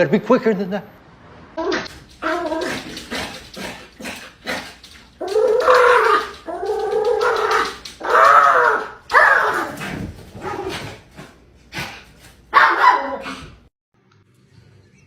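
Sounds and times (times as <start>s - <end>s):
knocks and clicks: 1.9s - 9.2s.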